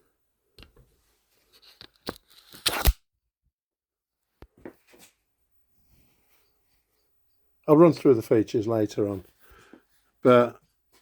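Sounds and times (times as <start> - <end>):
tape ripping: 2.0 - 3.0.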